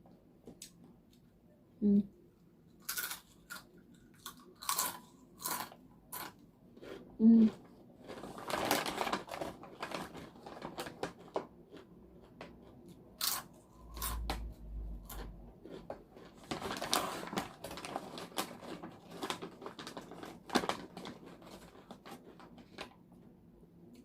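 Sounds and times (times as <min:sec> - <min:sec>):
chips crunching when chewed: 0:02.8 - 0:09.6, 0:10.9 - 0:12.3, 0:13.2 - 0:22.8.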